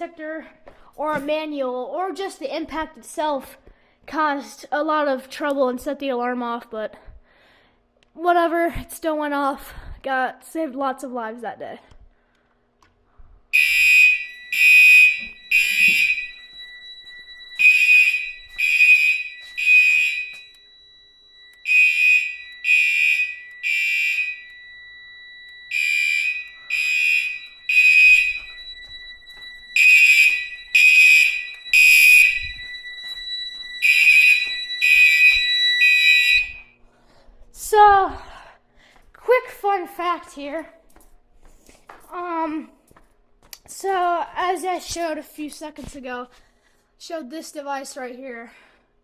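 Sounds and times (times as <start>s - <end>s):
fire alarm horn blasts: 13.5s - 36.8s
steady high tone: 13.6s - 36.8s.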